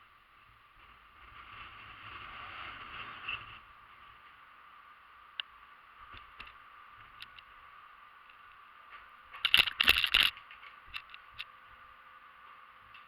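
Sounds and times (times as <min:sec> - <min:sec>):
faint steady hiss: 0:00.0 - 0:13.0
loud rattling clicks: 0:09.3 - 0:11.4.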